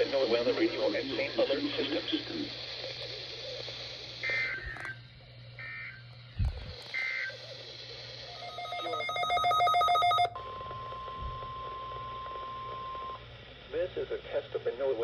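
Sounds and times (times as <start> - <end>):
digital data squawks: 4.2 - 6.0, 6.8 - 10.3
loud buzzing electronic tone: 4.2 - 7.5, 8.2 - 13.2
steady warning alarm tone: 4.2 - 7.5, 8.2 - 13.2.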